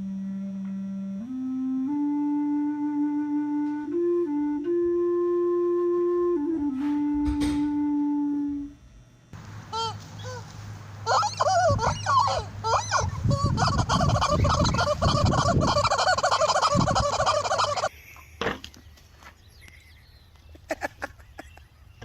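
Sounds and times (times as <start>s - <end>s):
turkeys gobbling: 9.7s - 17.9s.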